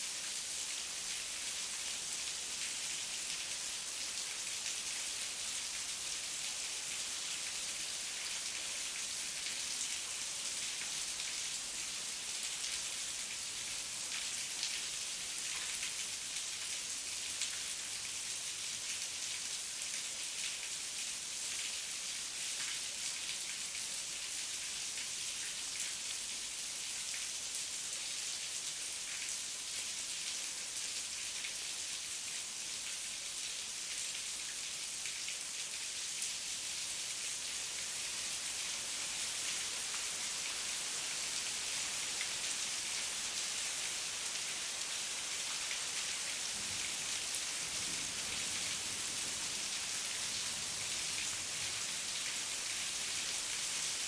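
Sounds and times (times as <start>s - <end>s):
heavy rain falling: 39.1s - 54.0s.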